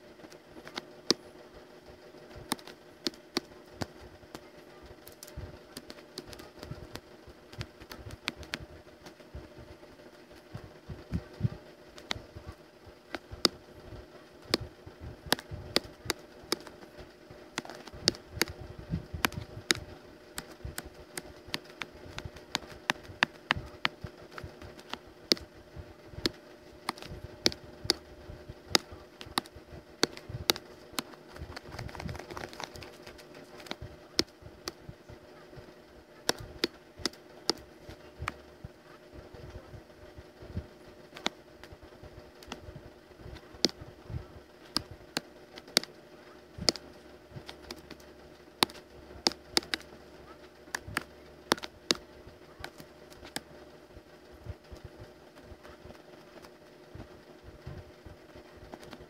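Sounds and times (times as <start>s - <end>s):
steady low hum: 0.0s - 59.0s
sharp clicks and taps at desk: 2.4s - 4.4s, 5.0s - 9.2s, 12.0s - 12.3s, 13.1s - 13.6s, 14.5s - 16.8s, 17.5s - 25.5s, 26.2s - 28.0s, 28.7s - 34.8s, 36.2s - 38.4s, 41.1s - 41.8s, 42.4s - 42.6s, 43.3s - 43.8s, 44.7s - 45.9s, 46.6s - 49.9s, 50.7s - 52.0s, 58.6s - 59.0s.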